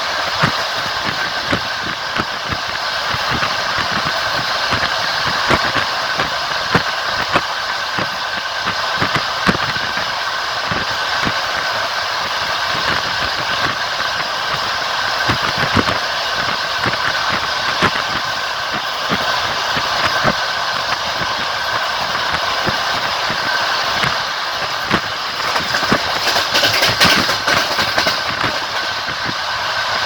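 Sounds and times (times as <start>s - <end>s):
train rolling rumble: 0.0s - 30.0s
wheels clattering over rails: 8.8s - 30.0s.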